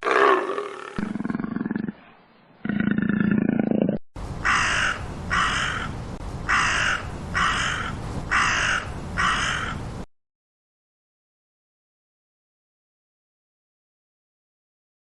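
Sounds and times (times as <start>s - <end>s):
big cat roaring: 0.0s - 2.0s, 2.6s - 4.0s
crow cawing: 4.4s - 5.9s, 6.5s - 9.8s.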